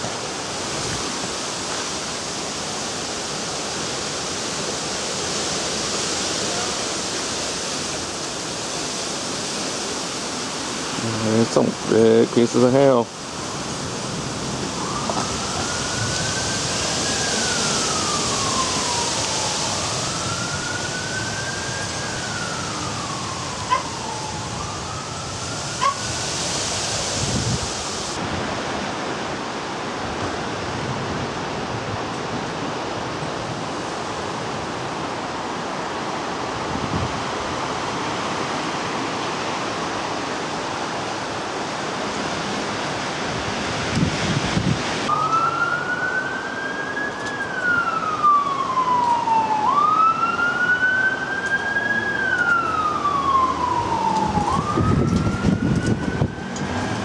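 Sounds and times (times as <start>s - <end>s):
hail and rain hiss: 0.0s - 45.1s
emergency siren wailing: 0.1s - 57.0s.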